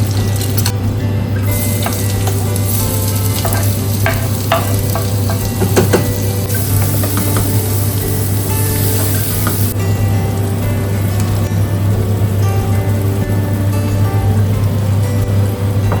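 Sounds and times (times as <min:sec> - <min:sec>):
food sizzling in a pan: 0:00.0 - 0:16.0
low hum: 0:00.0 - 0:16.0
utensil clicking against pan: 0:01.8 - 0:07.8.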